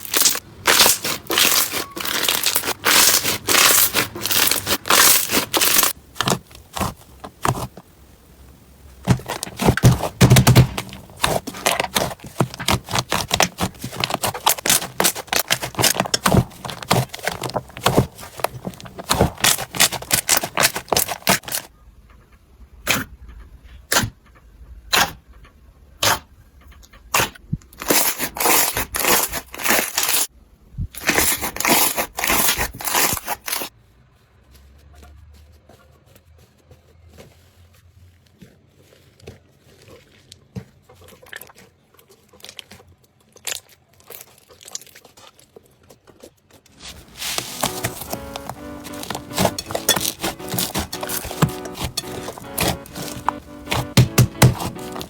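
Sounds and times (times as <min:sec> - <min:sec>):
slime crackling and popping: 0:00.0 - 0:07.8, 0:09.1 - 0:21.7, 0:47.0 - 0:55.0.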